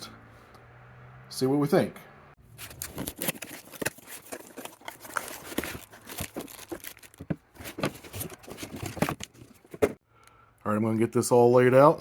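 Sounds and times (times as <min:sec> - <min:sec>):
packaging tearing and crinkling: 0:02.6 - 0:09.7.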